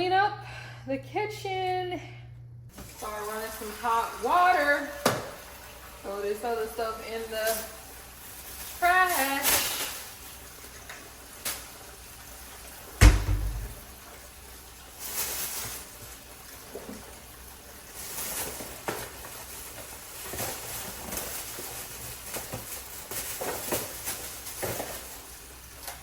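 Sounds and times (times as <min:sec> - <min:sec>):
kitchen items clattering: 0:02.7 - 0:11.9, 0:12.5 - 0:14.3, 0:15.0 - 0:26.0
rustling: 0:15.0 - 0:26.0.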